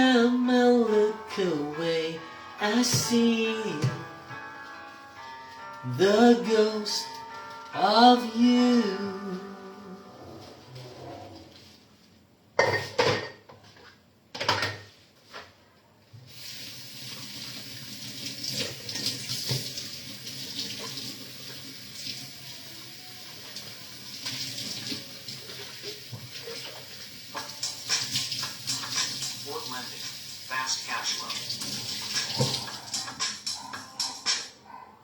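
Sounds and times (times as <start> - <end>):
dishes clinking: 12.6 - 13.5
tap running water into sink: 16.3 - 22.2, 23.5 - 30.5, 31.2 - 33.1.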